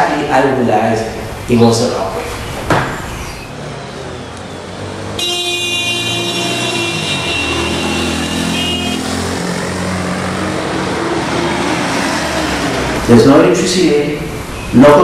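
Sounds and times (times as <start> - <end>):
street traffic: 0.0 - 15.0
vehicle horn sounding: 4.1 - 9.4.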